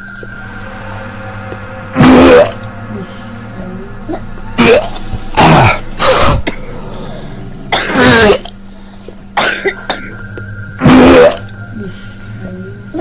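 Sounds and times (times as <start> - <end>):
person coughing hard: 7.7 - 8.5, 9.4 - 10.1.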